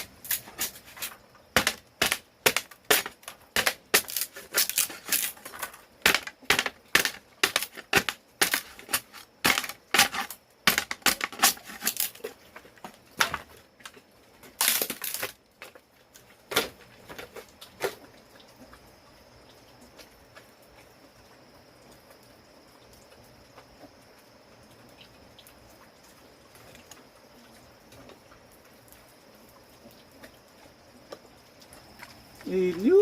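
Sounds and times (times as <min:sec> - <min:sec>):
sharp chopping knocks: 0:01.6 - 0:04.2.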